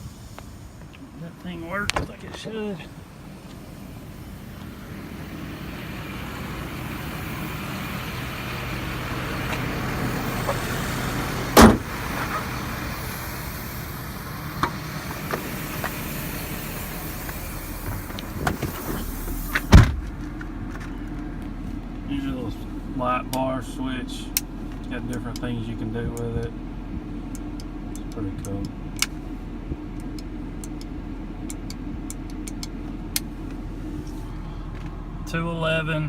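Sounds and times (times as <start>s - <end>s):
hiss: 0.0s - 1.0s, 10.0s - 19.7s
truck engine running: 0.0s - 36.0s
sharp loud clunks: 11.6s - 11.9s.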